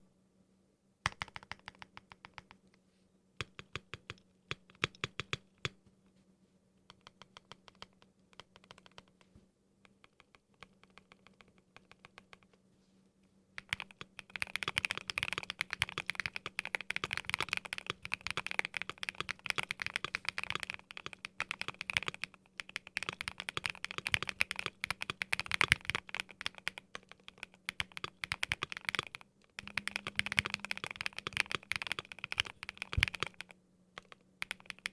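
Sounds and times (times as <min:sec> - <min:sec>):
mechanical keyboard typing: 0:01.1 - 0:02.6, 0:06.9 - 0:09.2, 0:09.9 - 0:12.5, 0:13.6 - 0:34.9.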